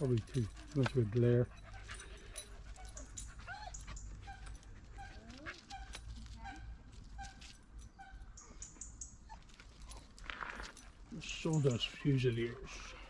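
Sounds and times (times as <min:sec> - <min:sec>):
dog whining and whimpering: 0:01.5 - 0:08.2, 0:09.2 - 0:10.1.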